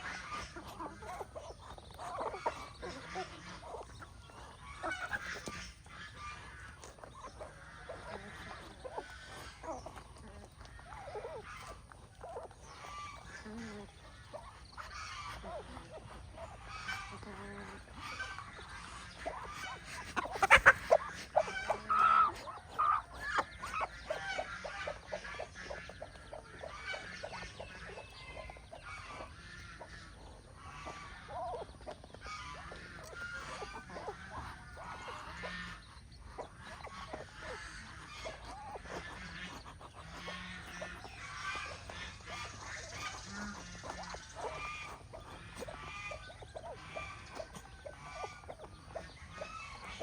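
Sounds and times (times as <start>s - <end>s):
hen clucking: 0.0s - 50.0s.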